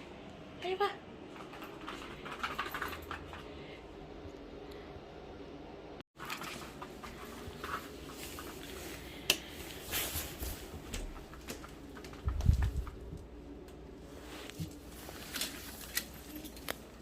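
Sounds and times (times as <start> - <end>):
small clicks and rustles: 6.2 - 13.8, 14.4 - 17.0.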